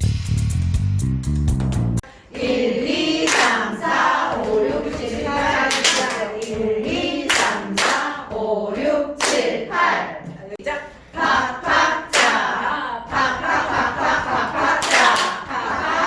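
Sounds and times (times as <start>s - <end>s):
hand claps and body slaps: 3.2s - 8.2s, 9.2s - 9.5s, 12.1s - 12.5s, 14.5s - 15.6s.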